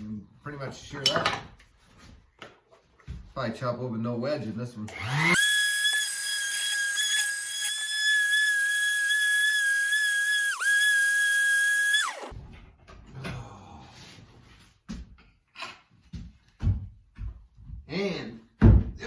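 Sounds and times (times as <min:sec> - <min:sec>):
small power tool motor whining: 0:04.9 - 0:12.3.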